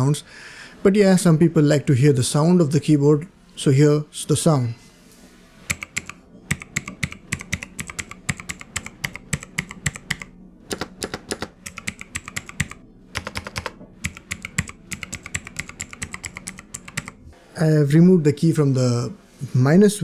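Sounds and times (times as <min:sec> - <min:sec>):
fast typing on mechanical keyboard: 0:05.7 - 0:17.2.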